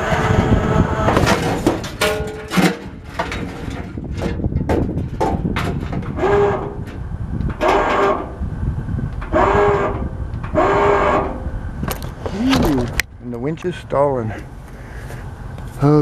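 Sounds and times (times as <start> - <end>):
sharp knocks and clanks: 1.0 - 8.3
electric winch motor straining: 5.8 - 8.5, 9.1 - 11.5.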